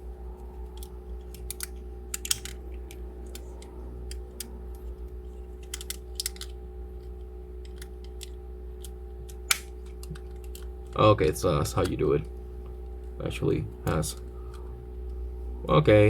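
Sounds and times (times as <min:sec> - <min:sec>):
steady low hum: 0:00.0 - 0:16.0
plastic figure parts clicking: 0:00.8 - 0:02.6, 0:05.6 - 0:06.5.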